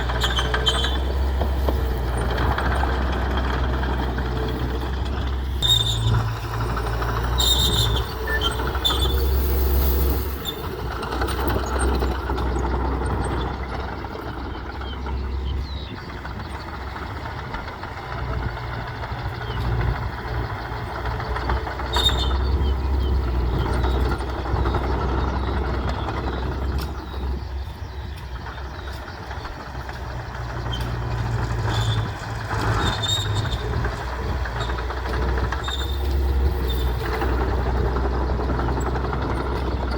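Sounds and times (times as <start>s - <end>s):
metallic clinks and squeaks: 0.0s - 3.4s, 4.7s - 12.6s, 29.8s - 37.8s
bulldozer diesel engine rumbling: 0.0s - 39.9s.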